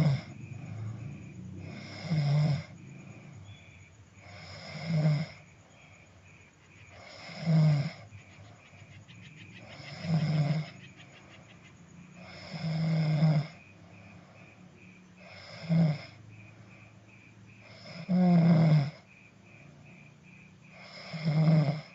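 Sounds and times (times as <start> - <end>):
person snoring: 0.0 - 3.5, 4.2 - 5.5, 6.9 - 8.1, 9.7 - 10.8, 12.2 - 13.6, 15.2 - 16.2, 17.6 - 19.0, 20.7 - 21.9
quiet breathing: 0.0 - 18.1.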